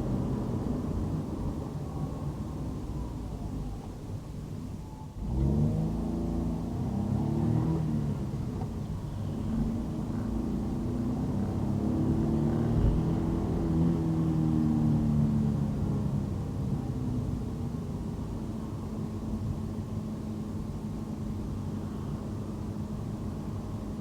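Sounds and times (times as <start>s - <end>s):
car engine accelerating: 5.1s - 23.9s.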